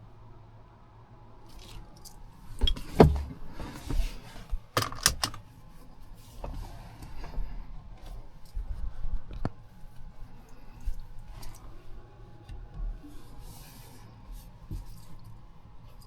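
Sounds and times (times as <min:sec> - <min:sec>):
handling clicks and knocks: 0:04.8 - 0:05.4.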